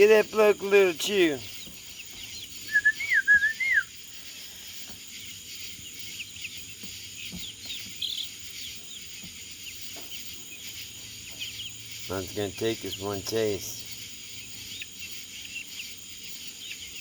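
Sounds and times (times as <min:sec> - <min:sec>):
faint high chirping: 0:00.0 - 0:17.0
bird whistling gliding notes: 0:02.5 - 0:04.0.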